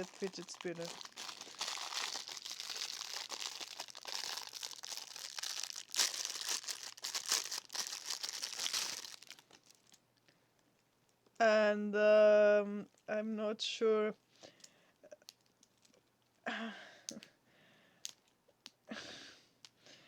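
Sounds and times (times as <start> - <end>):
plastic bag crinkling: 0.0 - 10.0.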